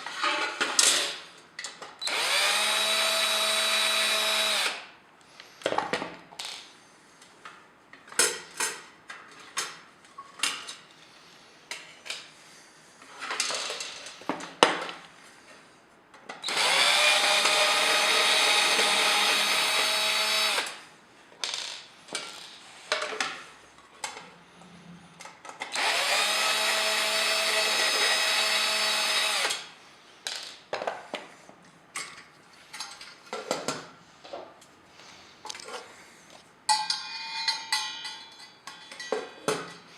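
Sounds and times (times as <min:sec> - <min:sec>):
electric screwdriver running: 0:02.1 - 0:04.8, 0:16.4 - 0:20.8, 0:25.7 - 0:29.6
parts clicking and rattling: 0:21.4 - 0:23.4.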